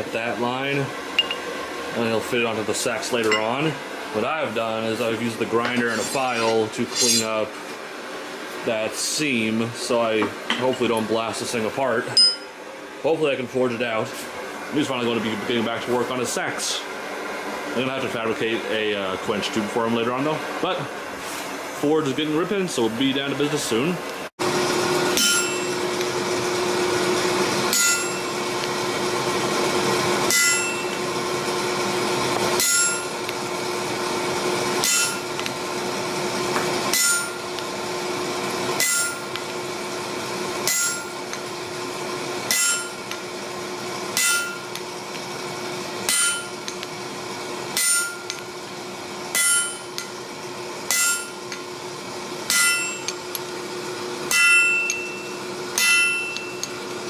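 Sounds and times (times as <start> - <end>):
hammer ringing on metal: 46.1 - 46.6, 47.8 - 48.3, 49.4 - 49.9, 50.9 - 51.4, 52.5 - 53.1, 54.3 - 56.6.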